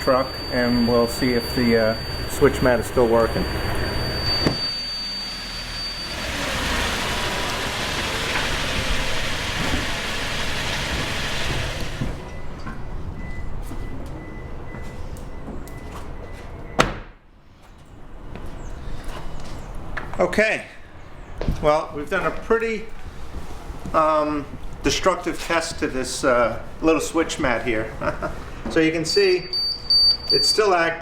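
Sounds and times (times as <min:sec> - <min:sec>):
high steady beeper tone: 0:00.0 - 0:07.8
pickup truck engine running: 0:00.0 - 0:12.2.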